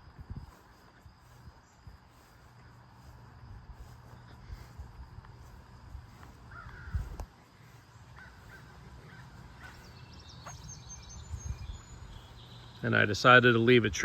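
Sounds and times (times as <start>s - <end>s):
wind rumble on microphone: 0.0s - 2.3s, 3.3s - 7.4s, 8.2s - 12.4s.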